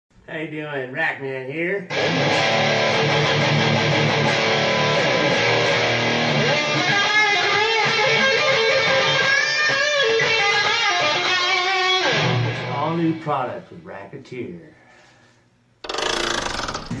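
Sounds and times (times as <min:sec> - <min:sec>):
strummed electric guitar: 0:01.9 - 0:13.2
bending guitar lead lines: 0:01.9 - 0:13.4.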